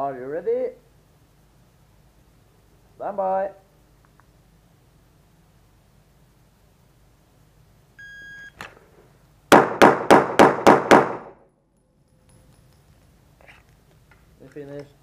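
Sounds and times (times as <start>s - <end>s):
rapid pistol shots: 9.5s - 11.4s.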